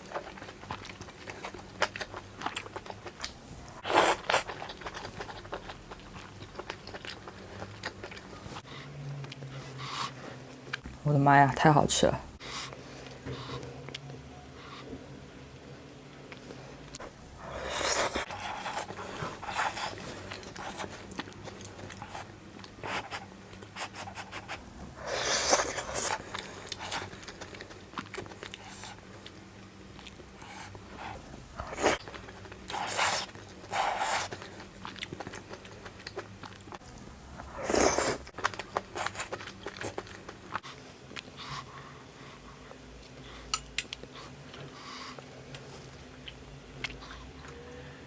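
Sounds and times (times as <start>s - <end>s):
person chewing: 0.0s - 10.8s, 16.3s - 47.7s
loud slurps: 37.4s - 38.3s.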